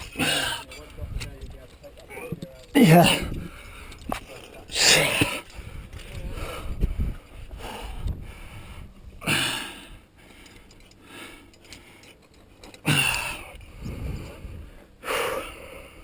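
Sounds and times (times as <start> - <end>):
gear clinking: 0.0 - 6.3, 10.2 - 14.5
heavy breathing: 3.0 - 16.0.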